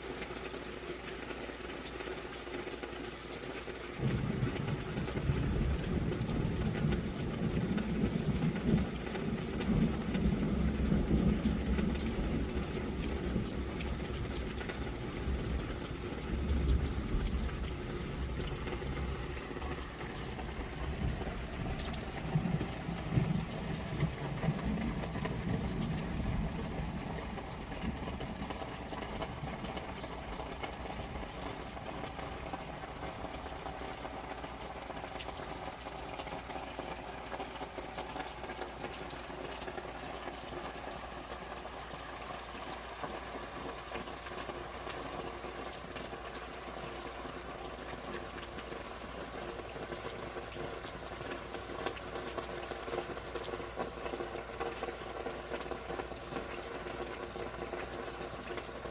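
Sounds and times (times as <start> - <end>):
rain pattering on tarps: 0.0 - 58.9.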